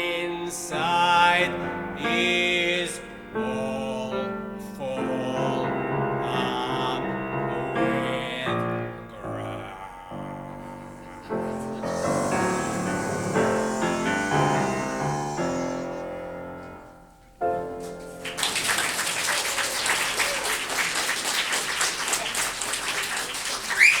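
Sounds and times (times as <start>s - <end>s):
solo piano chords: 0.0s - 18.7s
audience applause: 11.6s - 16.0s, 18.1s - 24.0s.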